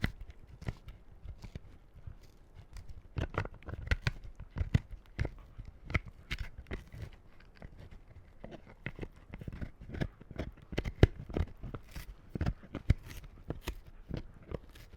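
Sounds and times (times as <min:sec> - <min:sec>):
dog crunching chew treat: 0:00.0 - 0:14.9.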